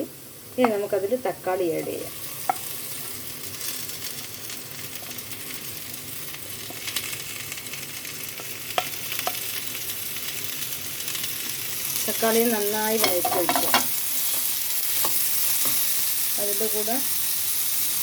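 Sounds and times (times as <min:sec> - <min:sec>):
vegetables sizzling in a pan: 0:00.0 - 0:18.0
spoon knocking against pan: 0:02.4 - 0:02.7, 0:13.0 - 0:14.0.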